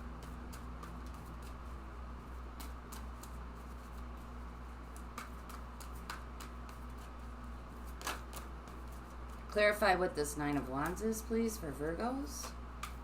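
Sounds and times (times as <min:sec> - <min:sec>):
steady low hum: 0:00.0 - 0:13.0
cards shuffling and clicking: 0:00.1 - 0:09.5, 0:12.3 - 0:13.0.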